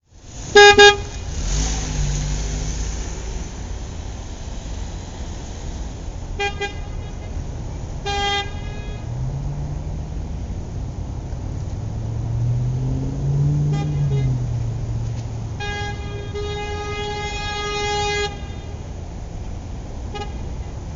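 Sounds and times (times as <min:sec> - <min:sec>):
car horn toots: 0:00.4 - 0:01.5, 0:06.4 - 0:09.3, 0:13.6 - 0:14.7, 0:15.5 - 0:18.9, 0:20.1 - 0:20.8.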